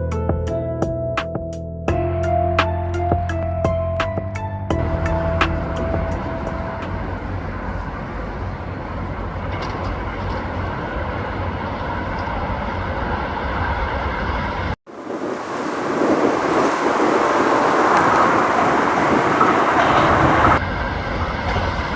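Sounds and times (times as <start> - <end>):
low outdoor rumble: 3.0 - 14.6
electric train approaching: 4.7 - 21.9.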